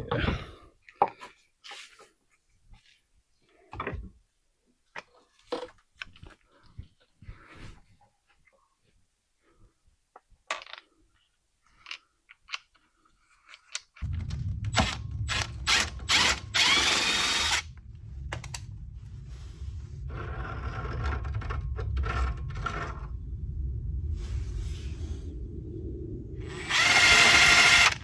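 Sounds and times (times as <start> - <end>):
steady low hum: 14.0 - 28.0
power tool running: 14.7 - 17.7, 26.5 - 28.0.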